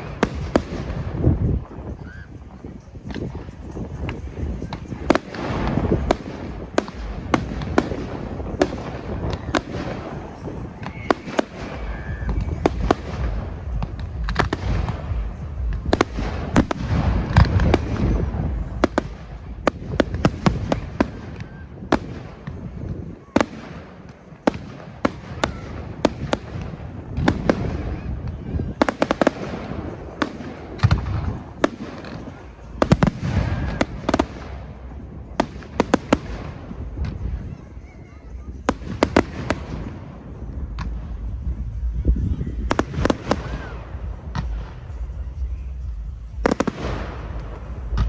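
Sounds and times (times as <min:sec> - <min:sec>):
firework cracks and bangs: 0:00.0 - 0:02.0, 0:03.0 - 0:37.4, 0:46.3 - 0:48.0
low rumble of bursts: 0:02.4 - 0:22.8, 0:38.4 - 0:48.0.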